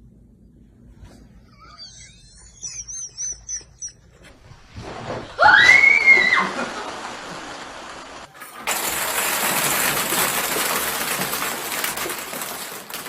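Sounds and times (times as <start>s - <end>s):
high-pitched warbling chirps: 1.4s - 4.4s
loud rising and falling shriek: 5.2s - 6.7s.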